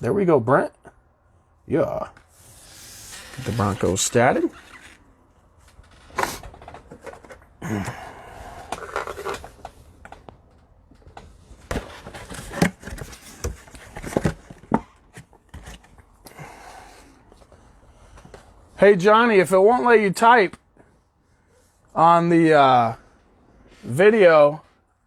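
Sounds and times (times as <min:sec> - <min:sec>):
cards sliding and rustling: 0:02.2 - 0:05.1.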